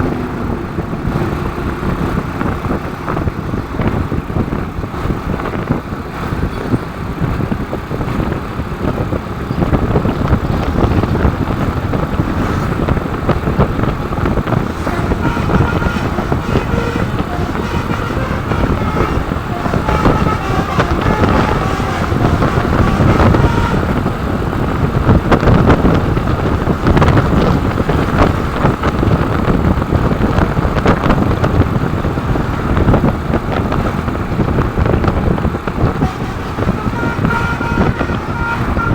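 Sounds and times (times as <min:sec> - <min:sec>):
multi-tone bus horn: 0:00.0 - 0:38.9
road traffic noise: 0:00.0 - 0:38.9.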